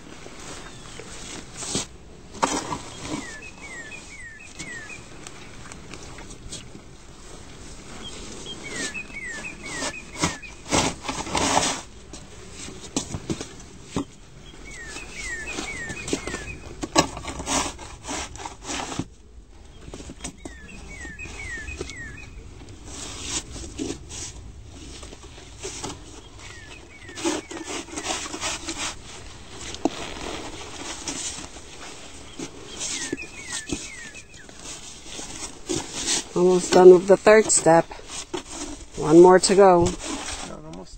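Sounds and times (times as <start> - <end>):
snow shovel scraping snow: 0.0 - 5.1, 6.5 - 13.0, 14.6 - 19.2, 22.9 - 40.6
small bird chirping: 2.8 - 5.6, 8.0 - 10.7, 14.4 - 16.8, 19.7 - 22.6, 26.1 - 28.8, 32.1 - 34.8.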